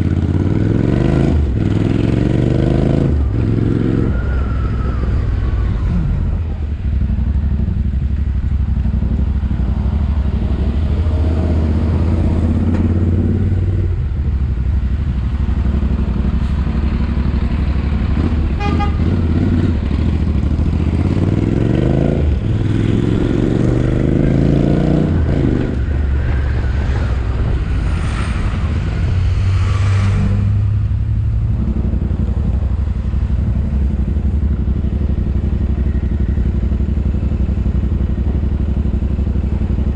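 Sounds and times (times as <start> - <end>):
motorcycle engine accelerating: 0.0 - 39.9
horn toot: 18.5 - 19.5.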